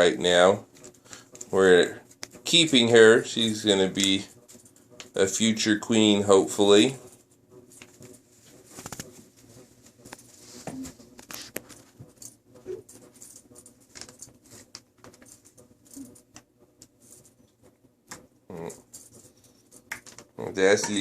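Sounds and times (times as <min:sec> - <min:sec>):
kitten paws tapping and scuffling: 0:06.2 - 0:21.0.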